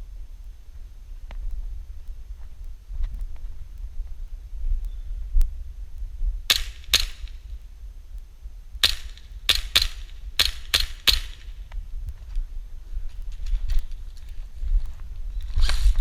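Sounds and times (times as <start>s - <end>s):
wind rumble: 0.0s - 16.0s
airsoft gun shots: 6.5s - 7.4s, 8.8s - 11.6s.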